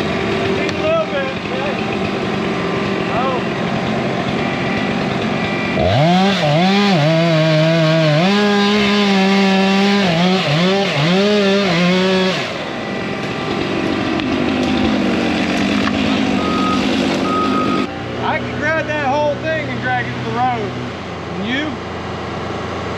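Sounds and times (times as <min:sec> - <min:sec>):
low steady engine noise: 0:00.0 - 0:05.8, 0:12.5 - 0:22.9
chainsaw revving: 0:00.0 - 0:21.0.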